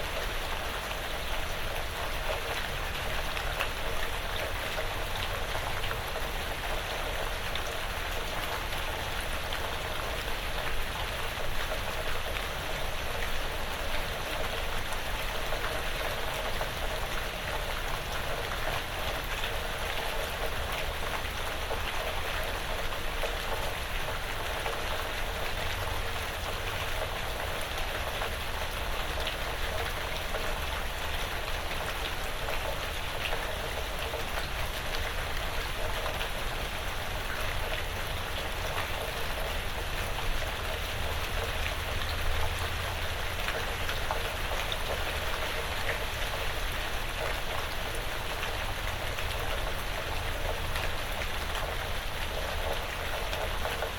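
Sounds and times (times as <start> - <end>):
rain pattering on a roof: 0.0 - 53.9.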